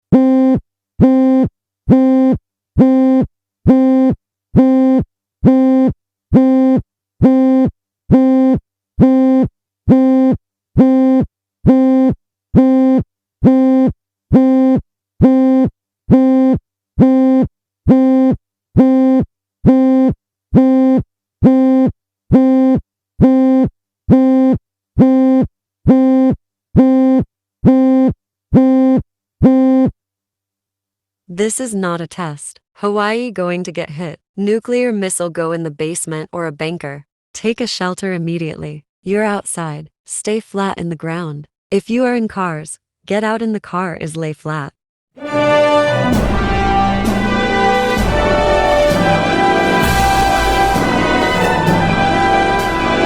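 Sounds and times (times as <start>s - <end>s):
buzzy electronic alarm beeps: 45.3s - 53.0s.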